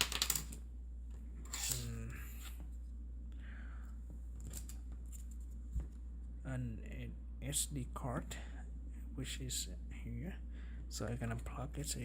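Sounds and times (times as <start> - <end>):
steady low hum: 0.0 - 12.0
handling noise with light clicks: 4.1 - 6.1.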